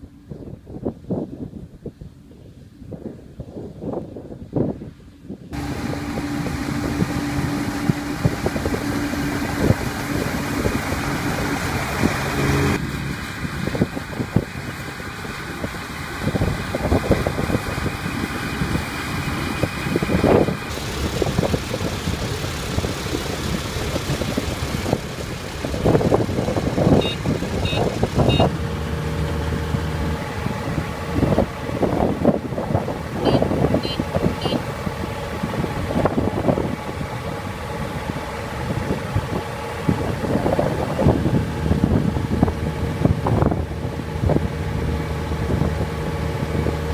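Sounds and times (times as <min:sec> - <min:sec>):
combine harvester engine running: 0:05.6 - 0:46.9
short high beeps: 0:27.0 - 0:28.5, 0:33.2 - 0:34.6.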